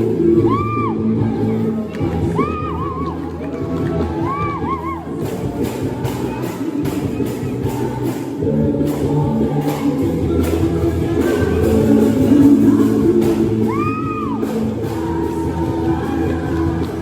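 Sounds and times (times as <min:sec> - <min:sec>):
guitar: 0:00.0 - 0:17.0
people singing worship song: 0:00.0 - 0:17.0.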